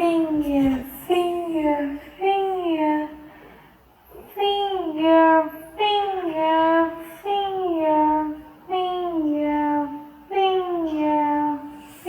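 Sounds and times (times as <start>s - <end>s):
child-like voice singing: 4.1s - 12.0s.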